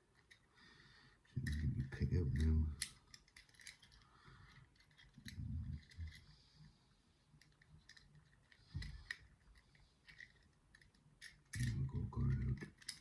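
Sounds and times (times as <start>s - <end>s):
lock pick clicking and scraping: 2.3s - 6.2s, 7.4s - 13.0s.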